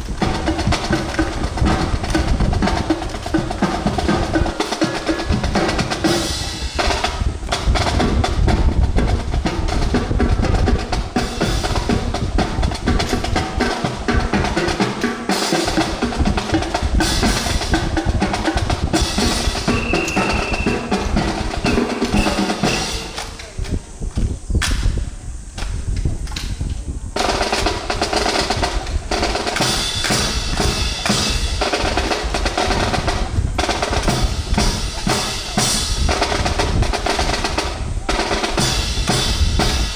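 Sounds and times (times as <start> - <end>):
bass drum beats: 0.0 - 23.2
snare drum rolls: 0.0 - 23.8, 27.2 - 39.9.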